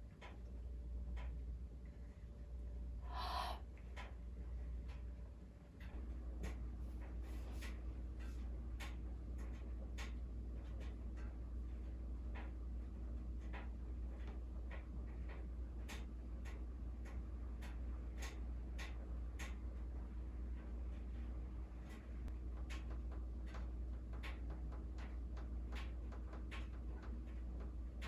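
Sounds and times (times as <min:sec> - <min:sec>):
steady low hum: 0:00.0 - 0:28.0.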